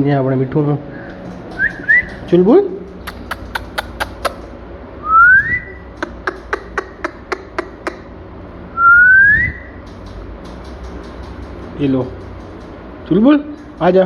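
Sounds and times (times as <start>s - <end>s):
rising whistles: 1.6s - 2.2s, 5.0s - 5.9s, 8.7s - 9.8s
sharp clicks: 2.9s - 4.5s, 9.8s - 12.8s.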